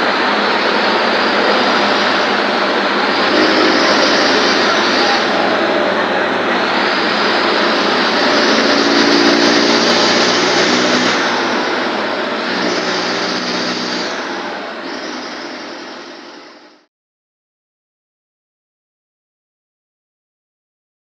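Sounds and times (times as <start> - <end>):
bus diesel engine running: 0.0 - 16.9.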